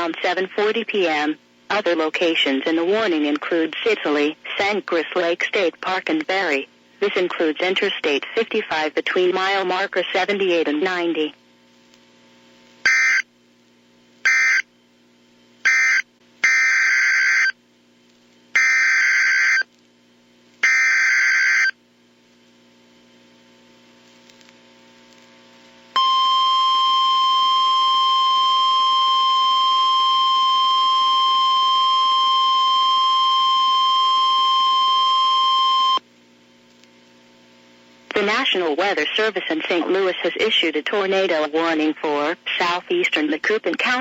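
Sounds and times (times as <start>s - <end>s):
faint mains hum: 0.0s - 44.0s
steady warning alarm tone: 12.9s - 13.2s, 14.2s - 14.7s, 15.6s - 17.6s, 18.6s - 19.7s, 20.6s - 21.8s, 26.0s - 36.0s.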